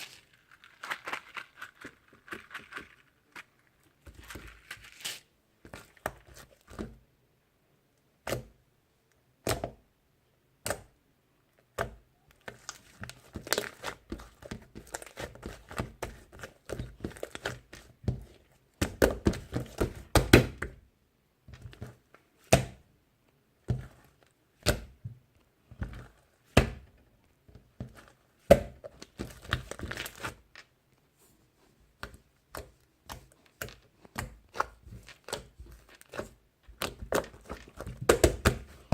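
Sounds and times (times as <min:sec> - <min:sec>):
crinkling: 0:00.0 - 0:06.7, 0:28.8 - 0:38.9.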